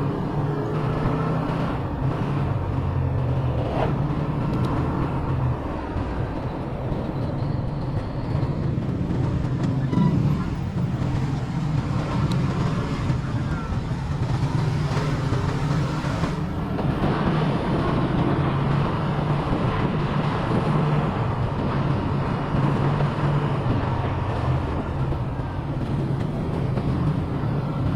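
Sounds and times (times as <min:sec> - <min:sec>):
traffic engines: 0:00.0 - 0:27.9
motorcycle engine running: 0:07.0 - 0:18.5.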